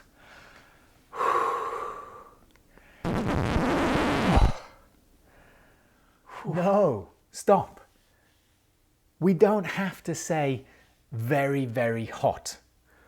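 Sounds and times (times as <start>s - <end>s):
man blowing breath forcefully: 4.2s - 4.8s
man sighing: 4.3s - 4.8s.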